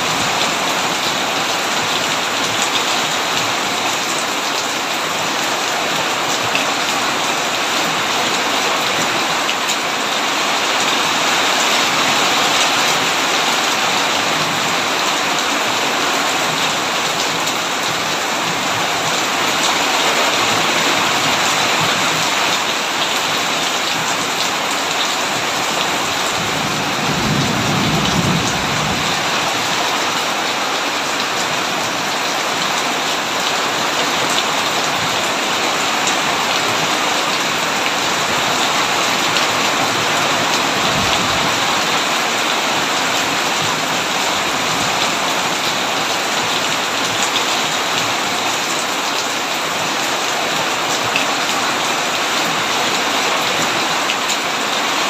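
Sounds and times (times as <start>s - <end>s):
heavy rain on a tin roof: 0.0s - 55.0s
low rumble of thunder: 26.4s - 29.4s.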